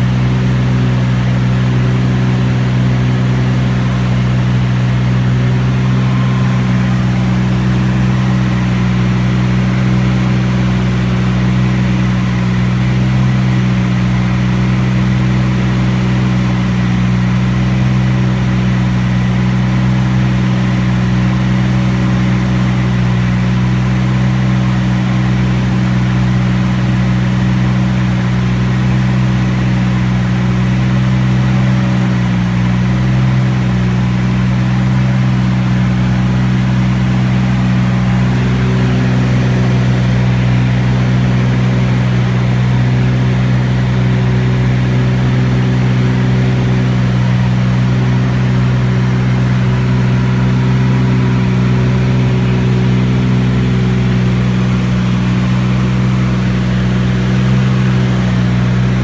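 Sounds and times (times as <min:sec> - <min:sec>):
propeller aircraft engine droning: 0:00.0 - 0:59.0.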